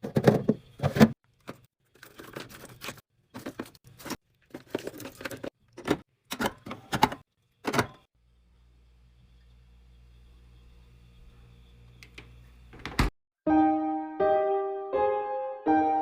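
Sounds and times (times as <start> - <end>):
containers clinking and clattering: 0.0 - 8.0.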